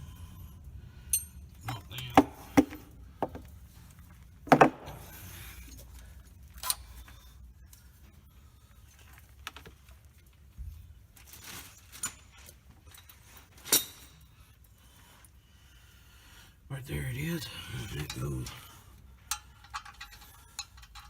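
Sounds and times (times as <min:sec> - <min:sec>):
metal tools clinking: 0:11.2 - 0:14.3, 0:17.8 - 0:21.0.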